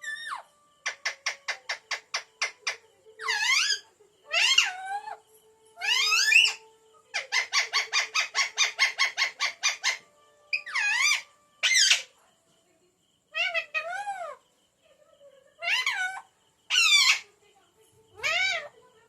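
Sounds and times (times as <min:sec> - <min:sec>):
parrot squawking: 0:00.0 - 0:05.2, 0:05.8 - 0:12.2, 0:13.3 - 0:14.4, 0:15.6 - 0:17.3, 0:18.2 - 0:18.8
parrot shrieks: 0:03.2 - 0:05.2, 0:10.6 - 0:12.1, 0:15.6 - 0:17.2, 0:18.2 - 0:18.7.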